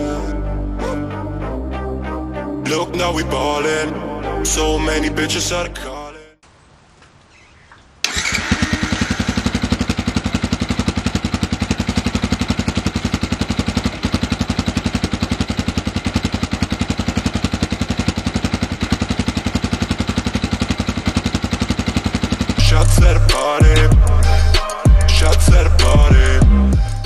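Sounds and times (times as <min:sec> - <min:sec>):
motorcycle starting: 0:07.6 - 0:27.0
motorcycle idling: 0:08.0 - 0:27.0.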